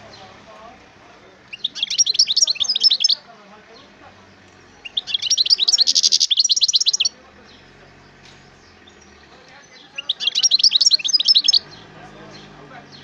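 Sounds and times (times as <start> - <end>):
songbird singing with buzzy trill: 0.0 - 13.0.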